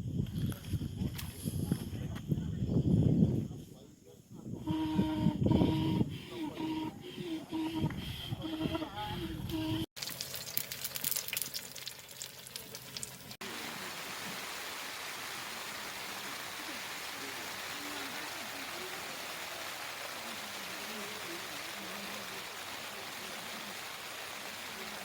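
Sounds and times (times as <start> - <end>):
water hissing: 10.0 - 25.0
faint voices: 15.2 - 25.0.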